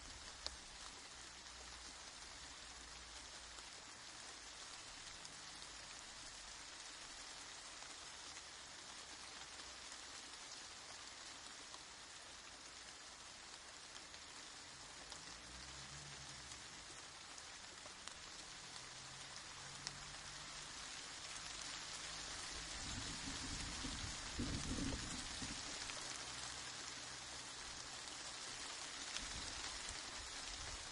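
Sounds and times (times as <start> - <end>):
steady rain falling: 0.0 - 30.9
faint low rumble: 11.1 - 28.2.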